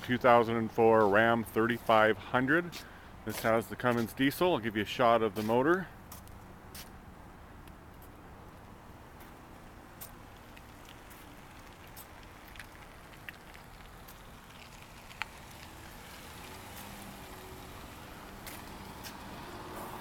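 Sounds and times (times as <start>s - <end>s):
low steady rumble: 8.2s - 20.0s
sleet and rain drops ticking: 9.6s - 19.6s.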